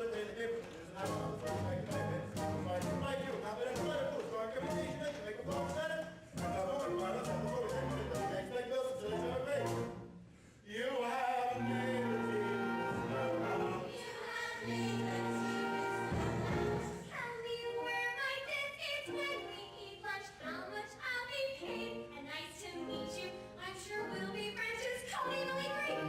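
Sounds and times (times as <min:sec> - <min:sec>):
accompaniment chords: 0:00.9 - 0:10.1, 0:11.6 - 0:17.1
group of voices singing: 0:06.4 - 0:09.9, 0:10.7 - 0:17.3.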